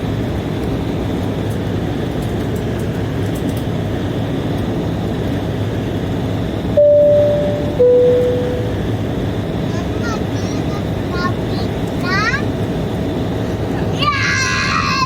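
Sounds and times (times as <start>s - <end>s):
airliner cabin rumble: 0.0s - 15.0s
two-tone cabin chime: 6.8s - 9.0s.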